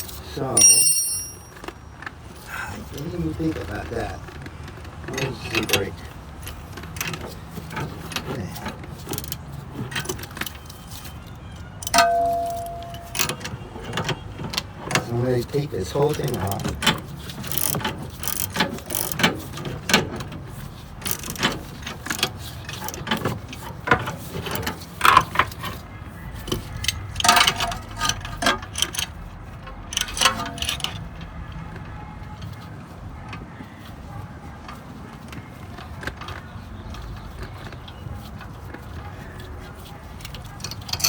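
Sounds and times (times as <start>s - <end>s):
metal tools clicking and clanking: 0.0s - 1.7s, 11.8s - 14.1s, 16.1s - 19.3s, 29.9s - 31.0s, 40.4s - 41.0s.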